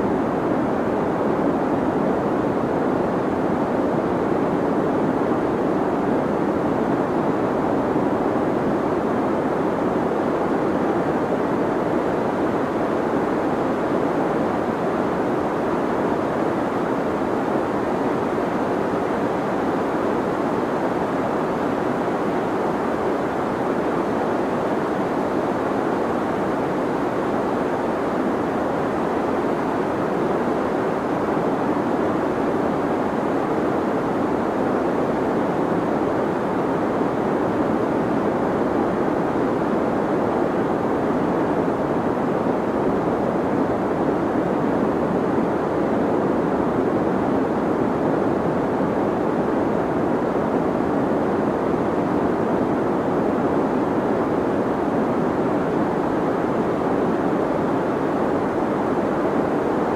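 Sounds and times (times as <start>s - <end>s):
deep white noise hiss: 0.0s - 59.9s.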